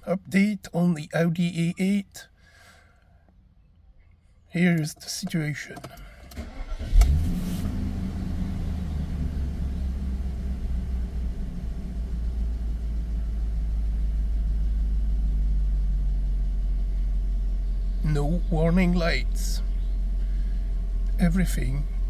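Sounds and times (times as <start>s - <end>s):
car engine cranking and starting: 5.7s - 22.0s
car engine idling: 6.0s - 22.0s.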